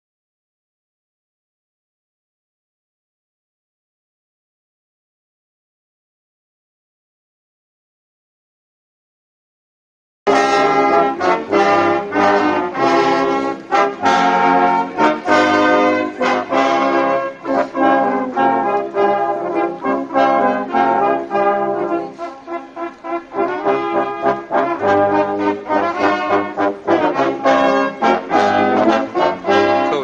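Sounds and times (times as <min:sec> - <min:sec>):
brass band playing: 0:10.3 - 0:30.0.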